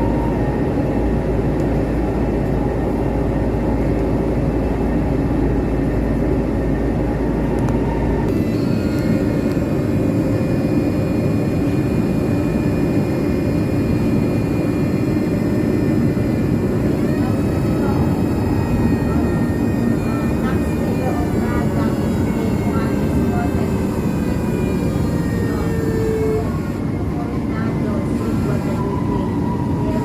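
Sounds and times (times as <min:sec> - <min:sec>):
rail car wheels rumbling on track: 0:00.0 - 0:30.0
high whining tones: 0:07.6 - 0:27.1.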